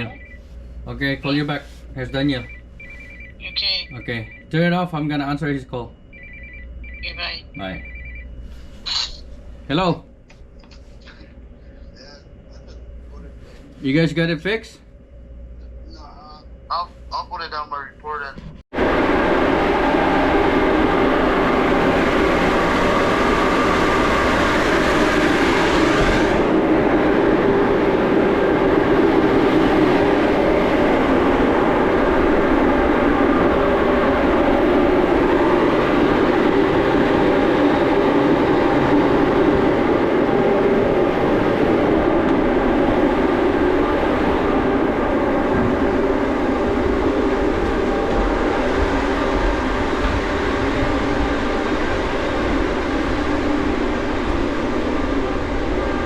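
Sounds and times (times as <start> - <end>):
engine-room machinery drone: 0.0 - 56.0.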